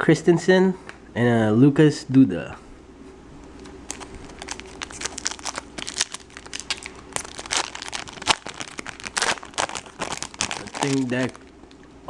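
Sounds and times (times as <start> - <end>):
foil wrapper crinkling and tearing: 3.5 - 11.9.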